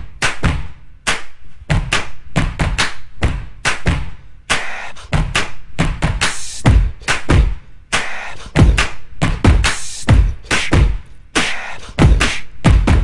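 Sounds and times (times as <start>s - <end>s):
beatboxing: 4.5s - 13.0s.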